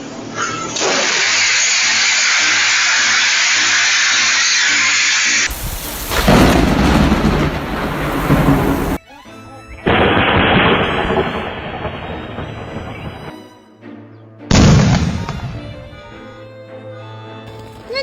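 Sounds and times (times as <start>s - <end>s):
heavy rain hissing: 1.0s - 9.0s
thunder clap rumbling: 5.5s - 9.0s, 9.9s - 13.4s.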